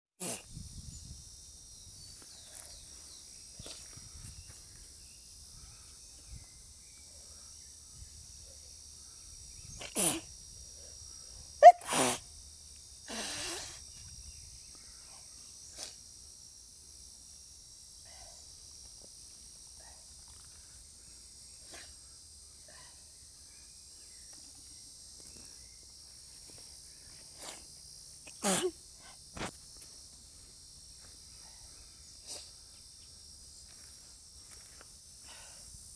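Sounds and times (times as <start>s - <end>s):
person sneezing: 0.2s - 0.4s, 9.8s - 10.3s, 11.6s - 12.2s, 13.1s - 13.8s, 28.3s - 28.8s.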